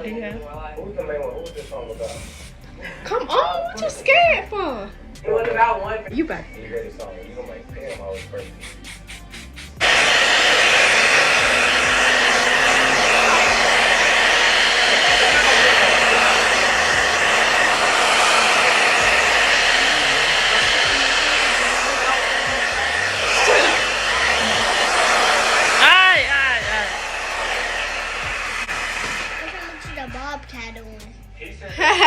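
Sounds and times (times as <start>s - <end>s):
hair dryer blowing: 7.8s - 30.5s.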